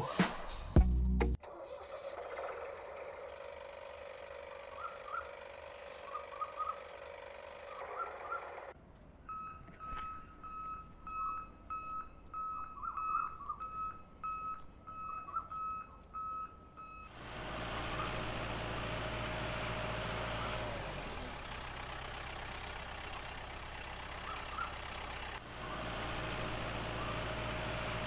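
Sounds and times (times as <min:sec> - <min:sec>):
engine running with hiss: 0:01.9 - 0:08.8, 0:17.1 - 0:28.0
vehicle reversing beeper: 0:07.6 - 0:18.5, 0:26.9 - 0:27.6.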